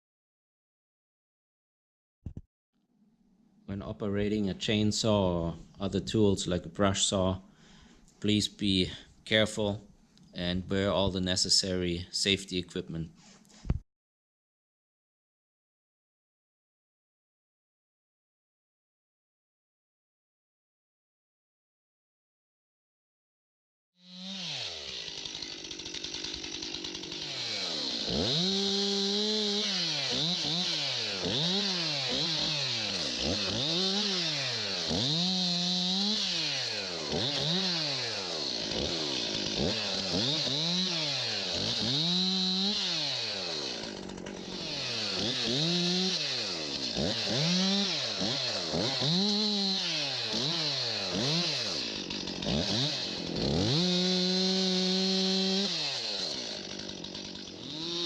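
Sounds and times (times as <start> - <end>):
chainsaw revving: 24.0 - 58.0.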